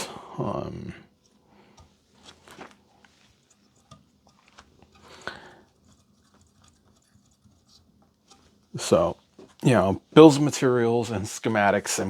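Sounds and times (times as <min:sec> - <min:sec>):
handling clicks and rustles: 0:01.2 - 0:09.7.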